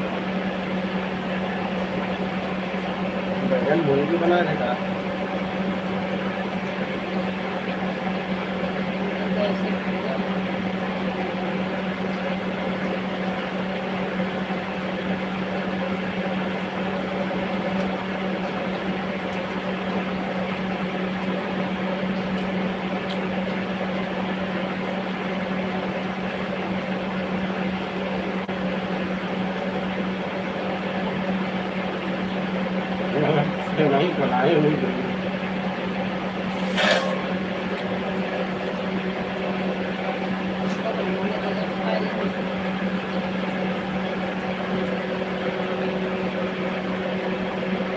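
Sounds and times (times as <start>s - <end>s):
appliance motor humming: 0.0s - 47.9s.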